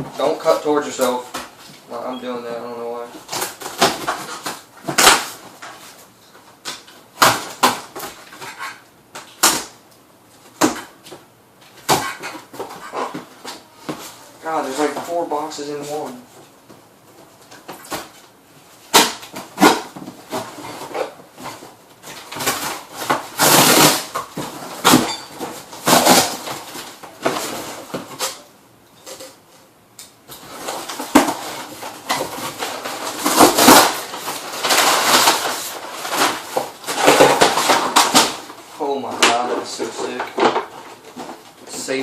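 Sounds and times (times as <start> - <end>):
cardboard scraping rustling and tearing: 19.4 - 28.4, 30.4 - 42.0.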